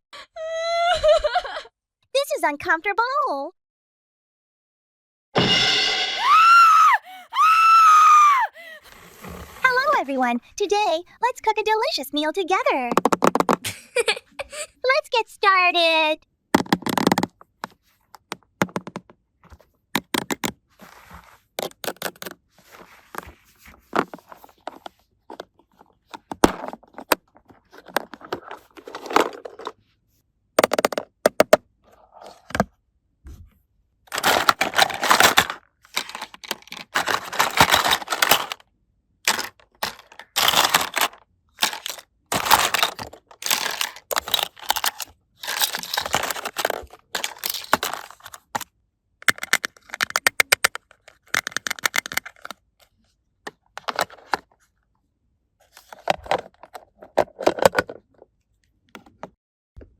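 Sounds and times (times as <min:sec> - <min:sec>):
packaging crinkling and tearing: 0:34.2 - 0:38.6, 0:39.3 - 0:48.6.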